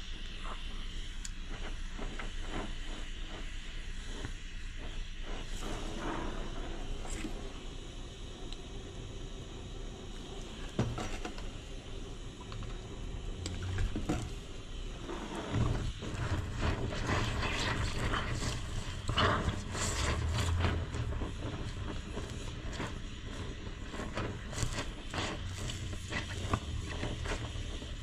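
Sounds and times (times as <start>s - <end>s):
metal scraping: 13.5s - 28.0s.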